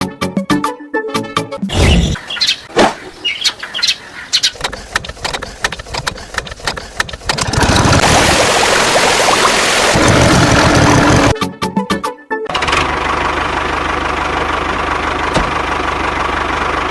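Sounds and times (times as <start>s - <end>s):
irregular clicks and bursts: 4.4s - 7.6s
engine running loudly: 7.4s - 8.7s, 9.7s - 11.4s, 12.5s - 16.9s.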